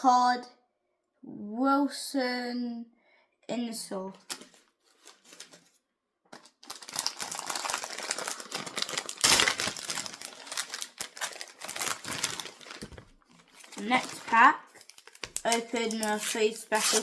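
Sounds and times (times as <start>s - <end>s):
foil wrapper crinkling: 6.4s - 17.0s.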